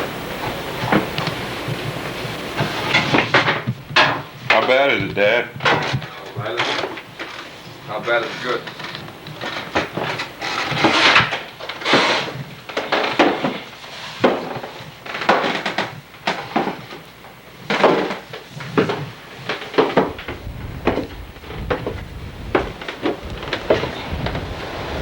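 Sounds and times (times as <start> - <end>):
irregular knocks and clatters: 0.4 - 24.8
wind rumble on microphone: 20.0 - 25.0.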